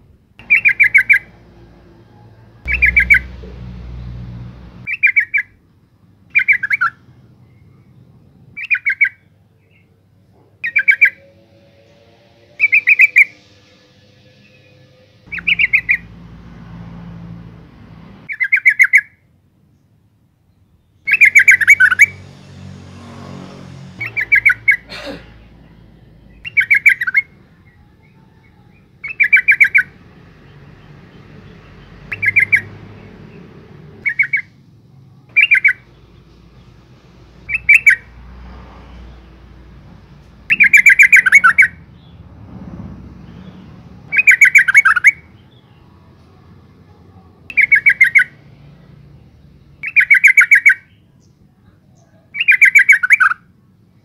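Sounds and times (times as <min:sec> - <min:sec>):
bird chattering call: 0:00.4 - 0:01.3, 0:02.6 - 0:03.4, 0:40.5 - 0:41.7.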